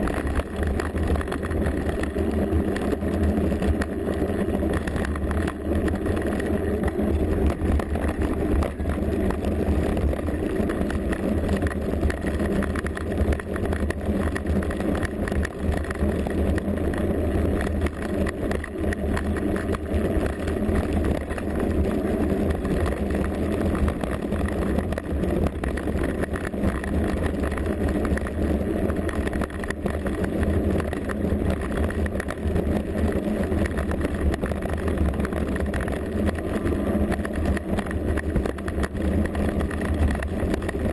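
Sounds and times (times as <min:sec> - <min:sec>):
bike rattling: 0:00.0 - 0:40.9
wind and tyre rumble: 0:00.0 - 0:40.9.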